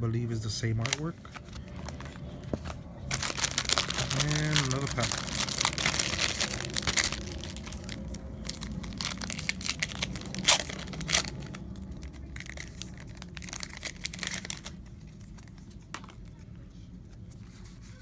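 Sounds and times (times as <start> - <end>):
foil wrapper crinkling and tearing: 3.0 - 16.4.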